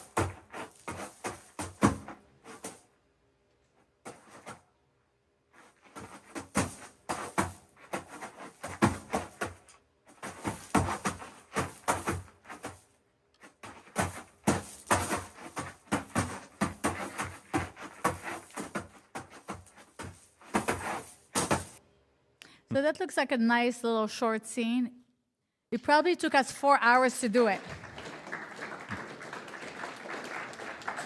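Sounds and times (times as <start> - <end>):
footsteps: 0.0 - 3.0, 3.6 - 4.8, 5.5 - 21.8.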